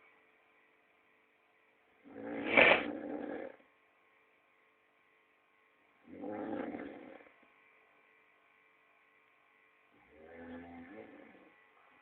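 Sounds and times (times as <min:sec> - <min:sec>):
person snoring: 0:02.0 - 0:03.6, 0:06.1 - 0:07.3, 0:10.1 - 0:11.5.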